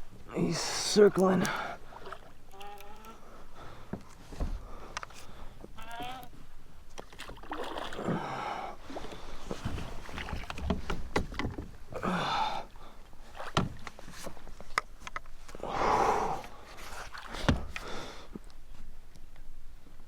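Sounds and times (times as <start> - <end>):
water splashing and sloshing: 0.0 - 19.1
fish splashing loudly: 7.1 - 8.2.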